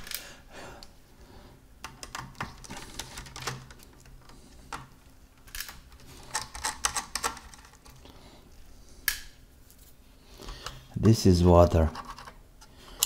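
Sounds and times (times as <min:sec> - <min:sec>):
laptop parts clicking: 0:01.8 - 0:08.0.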